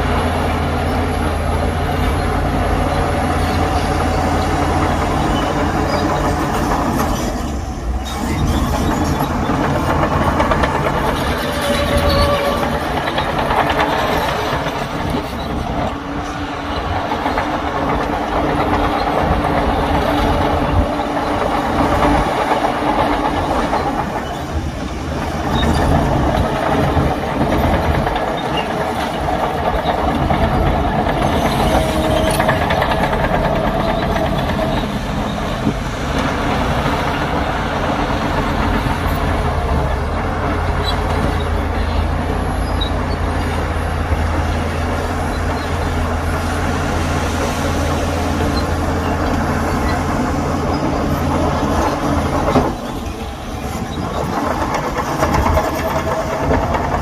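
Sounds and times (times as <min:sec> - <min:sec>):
heavy diesel engine drone: 0:00.0 - 0:57.0
machinery rattling and clatter: 0:00.0 - 0:57.0.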